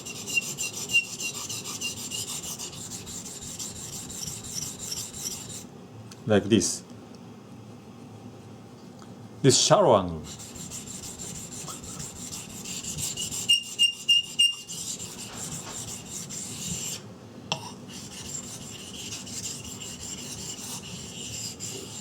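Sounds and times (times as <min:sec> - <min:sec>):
knife rubbing on whetstone: 0:00.0 - 0:05.7, 0:10.2 - 0:17.0, 0:17.6 - 0:22.0.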